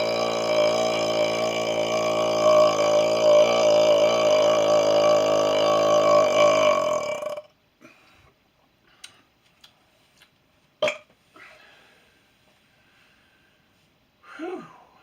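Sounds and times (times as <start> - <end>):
long burp: 0.0 - 7.6
soft breath: 11.2 - 15.0.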